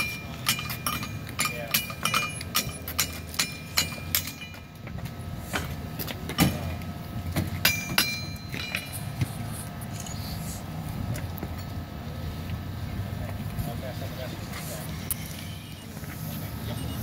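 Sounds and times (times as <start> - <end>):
hammer striking steel on anvil: 0.0 - 4.6, 7.6 - 9.1.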